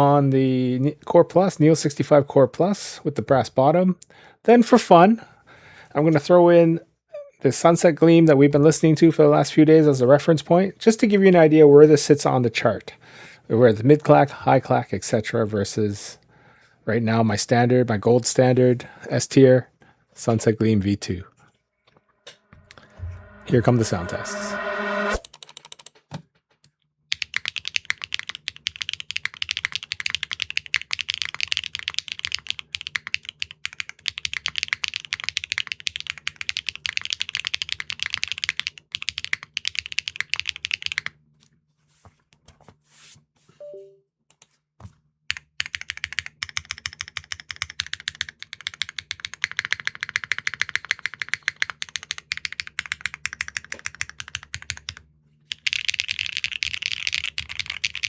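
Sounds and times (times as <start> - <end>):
typing on mechanical keyboard: 25.2 - 26.0, 27.1 - 41.1, 45.3 - 58.0.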